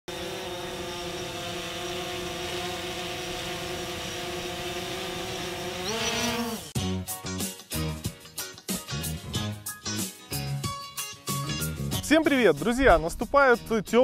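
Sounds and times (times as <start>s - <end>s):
drone propellers whining: 0.1s - 6.8s.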